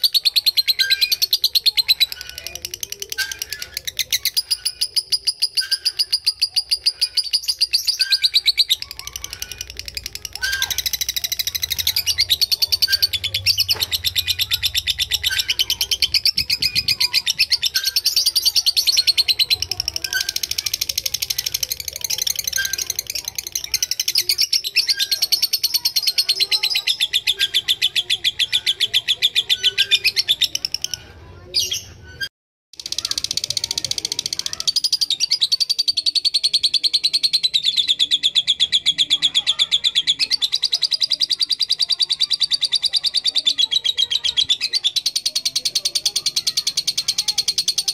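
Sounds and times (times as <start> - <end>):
lovebird chattering trill: 0.0 - 31.9.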